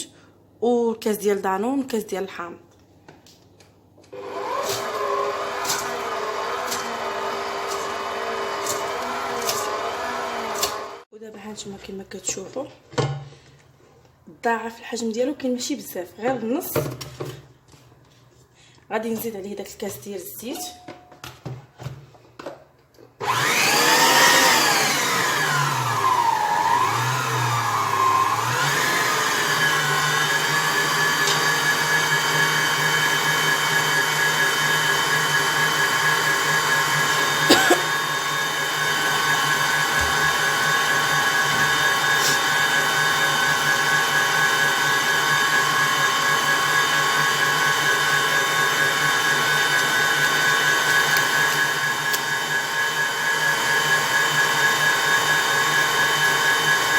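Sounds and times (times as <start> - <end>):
electric mixer whining: 4.2 - 11.1, 23.2 - 56.9.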